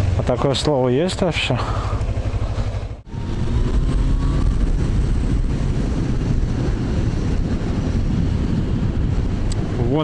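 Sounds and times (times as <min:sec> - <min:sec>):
motorcycle engine running: 0:00.0 - 0:10.0
wind on microphone: 0:03.1 - 0:10.0.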